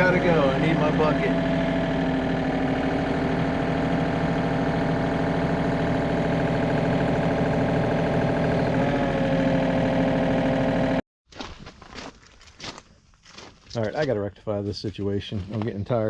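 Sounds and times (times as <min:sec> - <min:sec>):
excavator diesel engine running: 0:00.0 - 0:11.0.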